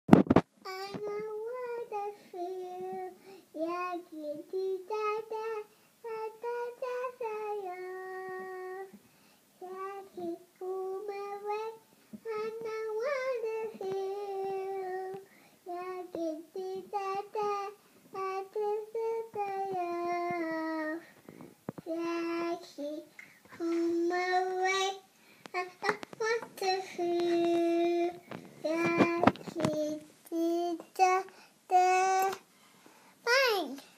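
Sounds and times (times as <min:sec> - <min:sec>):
child singing alone: 0:00.7 - 0:09.0, 0:09.6 - 0:21.1, 0:21.8 - 0:32.5.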